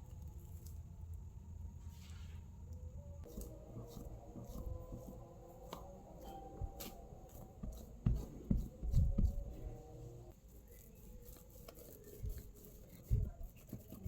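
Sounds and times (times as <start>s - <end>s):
faint steady hum: 0.0s - 14.0s
soft thumps and taps: 7.6s - 9.8s.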